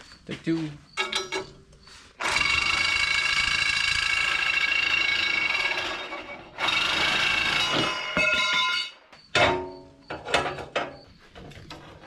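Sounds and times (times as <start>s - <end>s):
cut-off wheel cutting steel: 2.2s - 8.8s.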